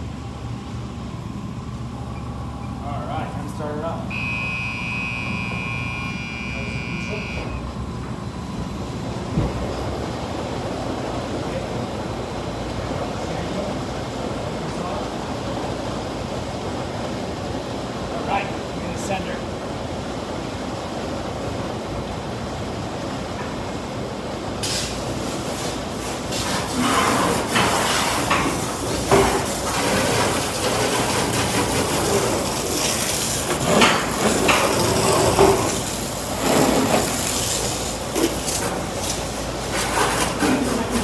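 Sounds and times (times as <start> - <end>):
car wash machinery hum: 0.0 - 41.0
water spray hiss: 24.6 - 28.1.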